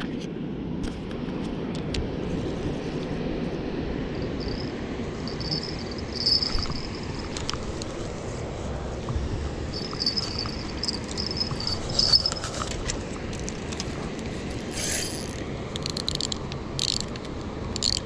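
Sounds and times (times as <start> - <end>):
low outdoor rumble: 0.0 - 18.0
cricket trilling: 4.1 - 7.9, 9.4 - 13.0, 14.7 - 17.2, 17.8 - 18.0.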